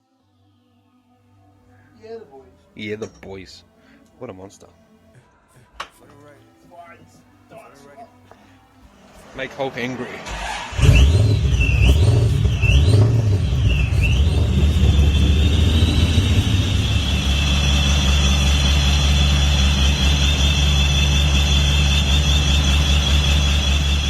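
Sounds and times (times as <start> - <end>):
car engine revving and idling: 9.0 - 24.0
supercharger whine: 9.1 - 24.0.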